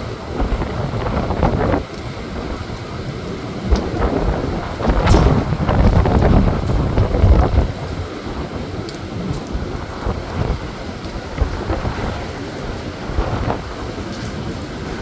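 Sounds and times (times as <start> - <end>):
steady rushing noise: 0.0 - 15.0
wind buffeting microphone: 0.0 - 15.0.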